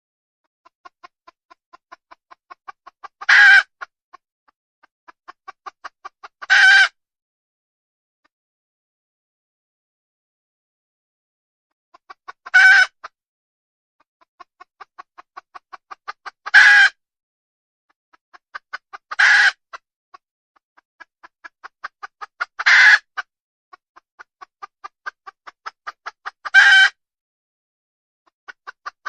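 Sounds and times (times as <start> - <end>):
hen clucking: 0.6 - 3.9, 4.8 - 7.0, 11.9 - 13.1, 14.2 - 17.0, 18.1 - 19.8, 20.8 - 27.0, 28.3 - 29.0
hen squawking: 12.5 - 13.0, 16.5 - 16.9, 19.1 - 19.6, 22.4 - 23.2.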